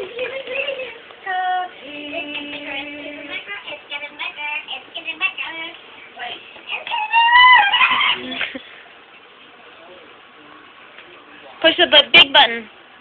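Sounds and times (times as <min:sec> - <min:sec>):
young child singing: 0:00.0 - 0:08.2.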